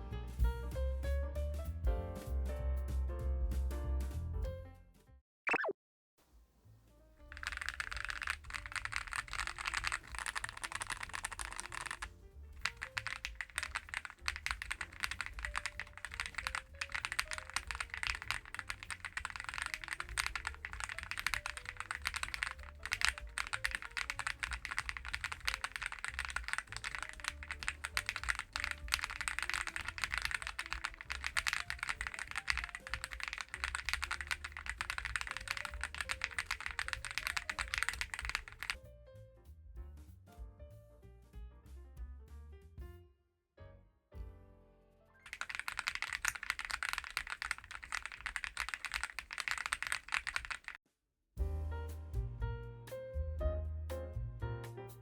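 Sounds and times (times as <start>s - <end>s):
mechanical keyboard typing: 7.3s - 38.8s, 45.3s - 50.8s
soft background music: 51.4s - 55.0s.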